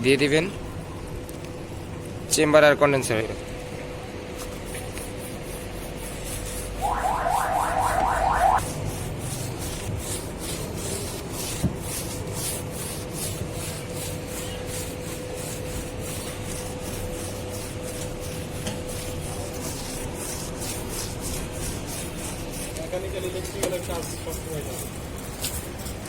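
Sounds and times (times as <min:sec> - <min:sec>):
brush scrubbing: 0:04.4 - 0:07.2, 0:08.7 - 0:26.0.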